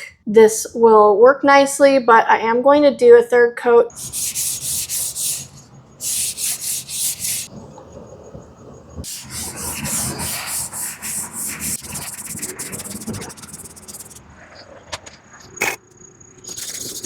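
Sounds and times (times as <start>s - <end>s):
hand-sanding wooden boards: 3.9s - 7.5s, 9.1s - 14.2s.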